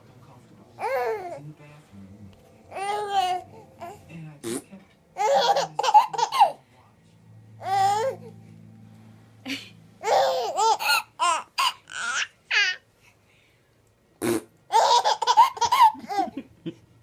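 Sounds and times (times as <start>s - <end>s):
baby laughing: 5.2s - 6.6s, 10.0s - 12.8s, 14.7s - 16.5s
faint low buzz: 7.0s - 10.0s.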